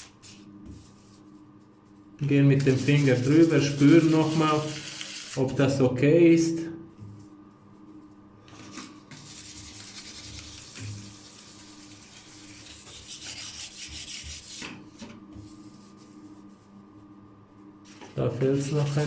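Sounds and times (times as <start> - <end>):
sandpaper scratching on enamel: 9.2 - 14.7.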